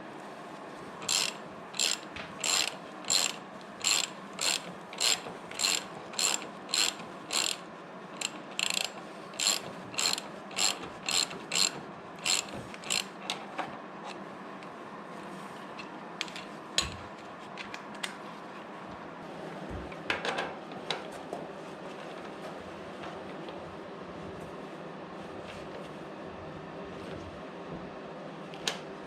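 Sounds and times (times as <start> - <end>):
socket ratchet clicking: 1.0 - 7.6, 8.2 - 13.1.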